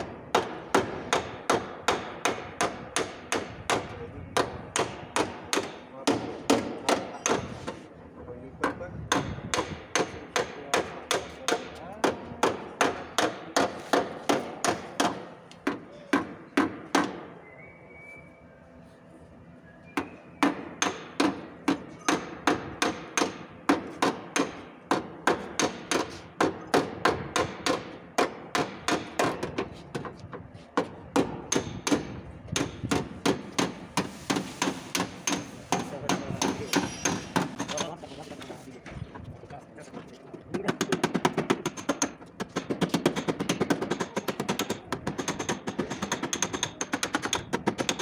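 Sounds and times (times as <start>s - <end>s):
hammer striking sheet metal: 31.2s - 37.9s.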